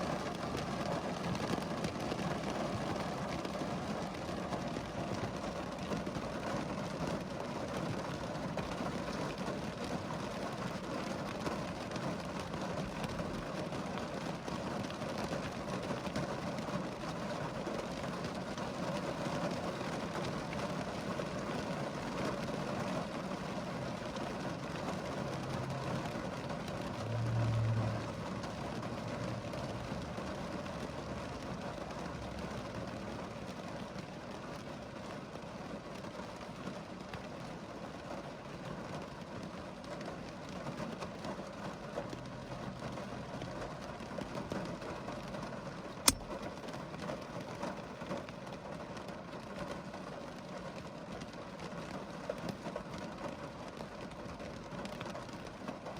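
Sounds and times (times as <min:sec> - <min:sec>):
steady rain falling: 0:00.0 - 0:55.9.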